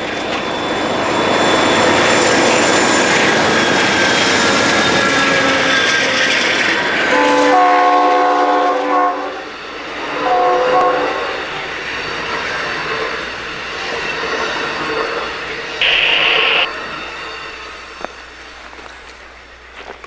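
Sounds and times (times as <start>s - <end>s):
passing train: 0.0s - 20.0s
locomotive air horn blasts: 7.1s - 9.4s, 10.2s - 11.4s.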